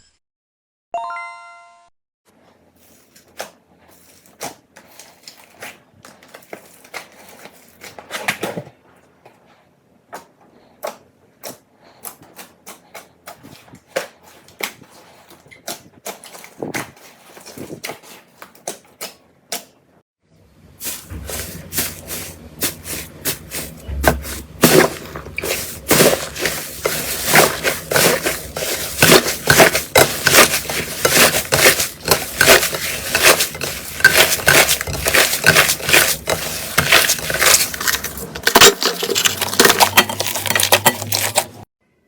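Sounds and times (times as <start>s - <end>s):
short chime: 1.0s - 1.9s.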